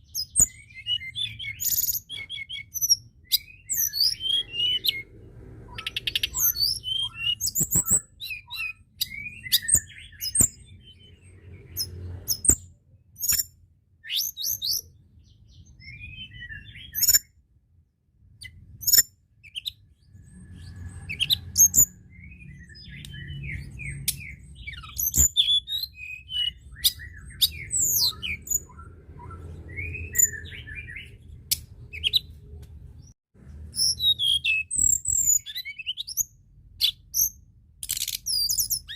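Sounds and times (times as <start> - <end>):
songbird chirping and singing: 0.0 - 17.4, 18.3 - 38.9.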